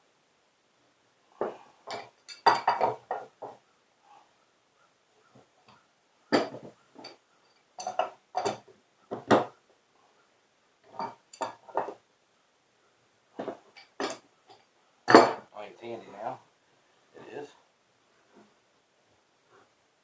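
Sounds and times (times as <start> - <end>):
hand tools clinking on metal: 1.4 - 3.6, 6.3 - 9.5, 10.9 - 12.0, 13.4 - 15.5.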